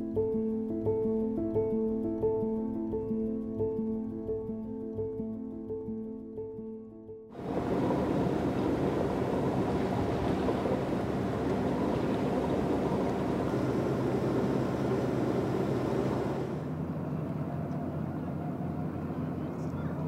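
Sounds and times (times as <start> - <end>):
water and wind hiss: 7.4 - 16.7
boat motor humming: 7.4 - 20.0.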